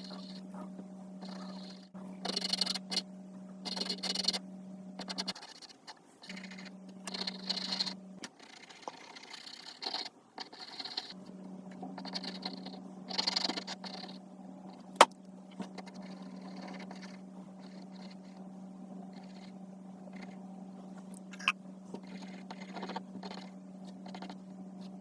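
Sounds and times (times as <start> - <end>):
steady low hum: 0.0 - 25.0
pencils scratching on paper: 3.6 - 4.4, 5.0 - 11.2, 21.4 - 25.0.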